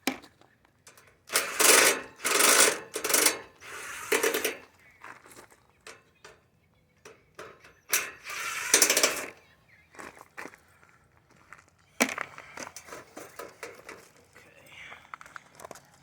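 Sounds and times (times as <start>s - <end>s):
sheet metal clattering and scraping: 0.9s - 4.7s, 7.4s - 9.4s, 12.7s - 14.2s.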